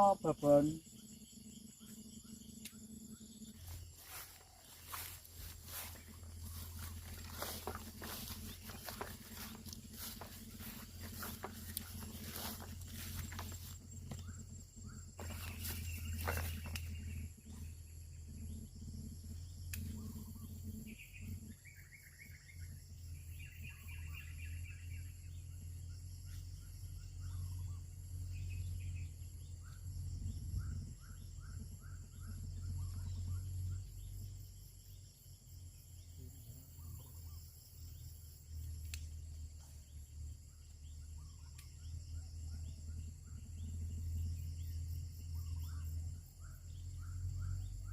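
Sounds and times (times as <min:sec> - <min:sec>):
high insect drone: 0:00.0 - 0:47.9
small birds chirping: 0:00.0 - 0:47.9
low rumble: 0:02.4 - 0:21.7.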